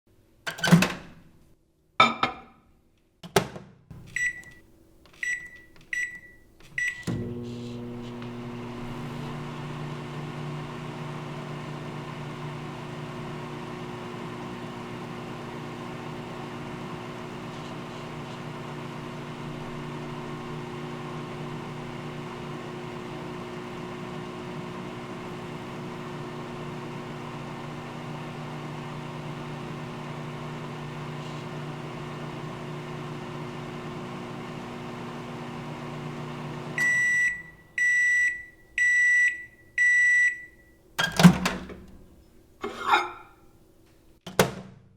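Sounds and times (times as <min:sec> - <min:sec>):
short keypad beeps: 0:04.1 - 0:04.6, 0:05.2 - 0:07.0
microwave oven humming: 0:05.3 - 0:42.1.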